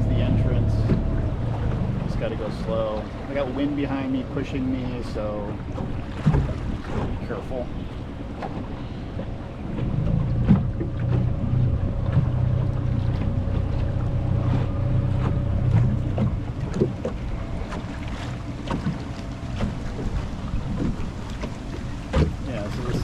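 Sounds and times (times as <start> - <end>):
outboard motor humming: 0.0 - 23.0
wind buffeting microphone: 0.0 - 23.0.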